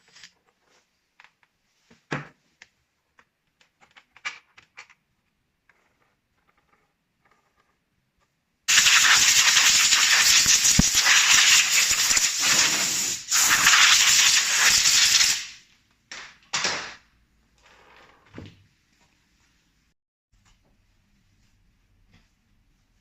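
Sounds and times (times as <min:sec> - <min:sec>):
air hissing: 0:08.7 - 0:15.6.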